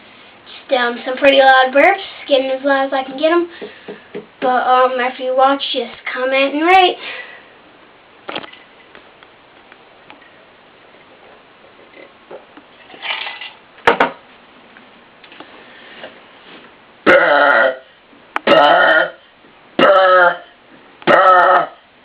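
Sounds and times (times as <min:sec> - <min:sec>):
man burping loudly: 0:17.0 - 0:21.8.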